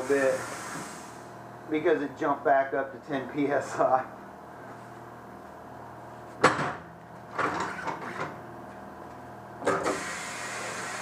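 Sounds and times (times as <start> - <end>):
steady hiss: 0.0 - 1.3.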